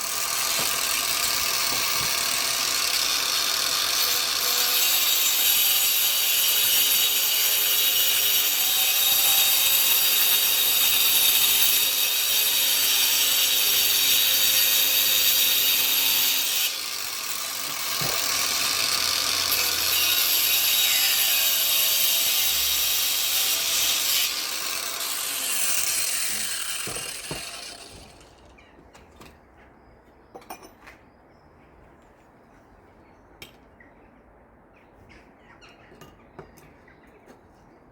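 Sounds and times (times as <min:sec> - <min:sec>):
angle grinder grinding mortar: 0:00.0 - 0:28.2.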